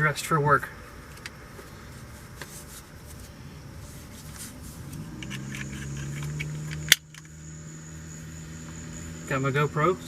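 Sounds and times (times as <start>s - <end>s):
faint ticks and scrapes: 1.1s - 7.3s.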